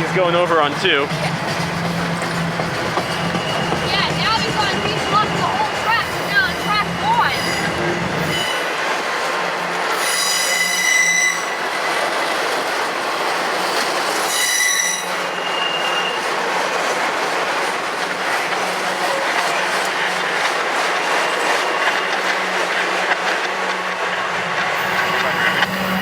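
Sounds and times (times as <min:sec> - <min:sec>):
wheels clicking over rail joints: 0:00.0 - 0:08.4, 0:16.3 - 0:26.0
train wheels on rail: 0:00.0 - 0:26.0
steel wheel flange squeals: 0:01.9 - 0:08.8, 0:09.9 - 0:11.7, 0:14.3 - 0:16.3, 0:24.7 - 0:26.0.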